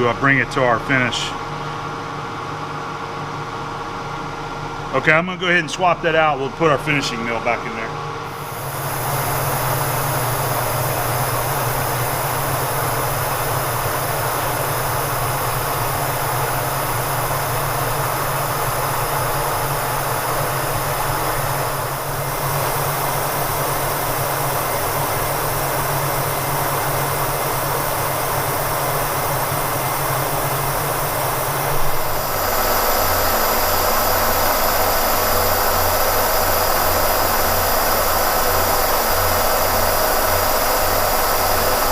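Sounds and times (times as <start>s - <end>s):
low pulsing hum with hiss: 0.0s - 41.9s
milling machine cutting: 8.4s - 41.9s.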